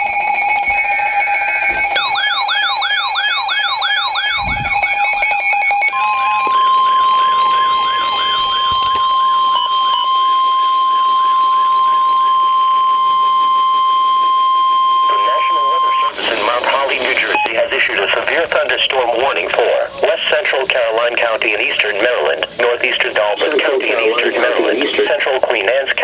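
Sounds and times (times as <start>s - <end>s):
rising and falling electronic warble: 0.0s - 17.2s
steady beeping tones: 0.0s - 26.0s
steady warning tone: 0.0s - 26.0s.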